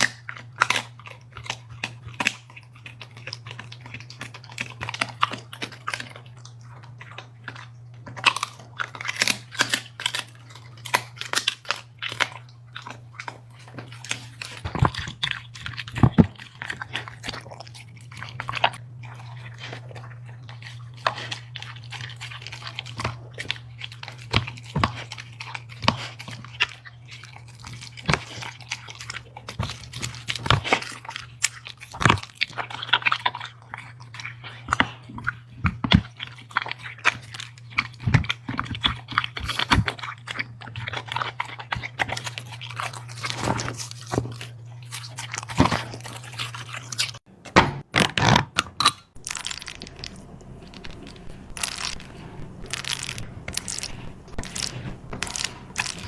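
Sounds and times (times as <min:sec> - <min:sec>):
dog chewing and crunching food: 0:00.0 - 0:56.0
steady low hum: 0:48.7 - 0:56.0.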